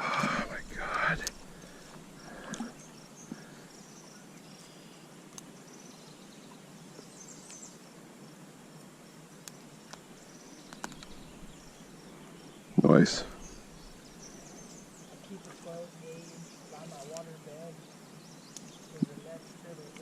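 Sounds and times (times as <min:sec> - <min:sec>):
steady hiss: 0:00.0 - 0:06.0, 0:06.6 - 0:19.9
high chirping of insects or birds: 0:00.0 - 0:20.0
light clicks: 0:10.7 - 0:11.2.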